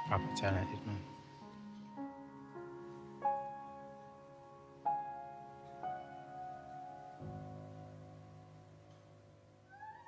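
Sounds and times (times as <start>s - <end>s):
soft solo piano: 0.0s - 9.7s.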